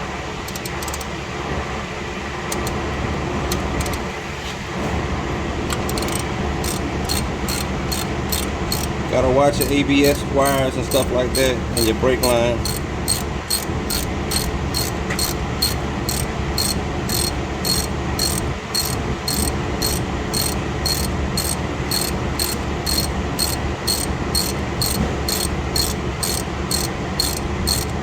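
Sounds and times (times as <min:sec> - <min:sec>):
low steady hum: 0:00.0 - 0:28.0
high-pitched clicking: 0:00.5 - 0:01.1, 0:02.5 - 0:02.8, 0:03.5 - 0:04.1, 0:05.7 - 0:08.9, 0:10.9 - 0:28.0.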